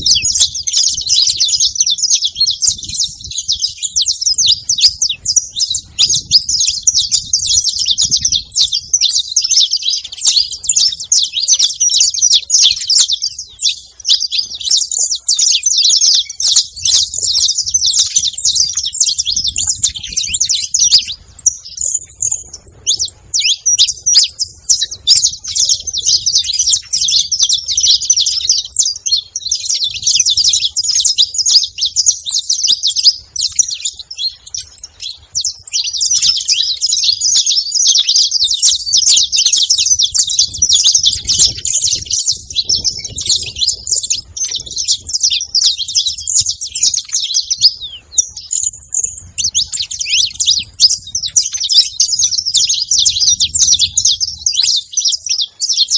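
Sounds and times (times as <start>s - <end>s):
finches chirping: 0.0s - 55.9s.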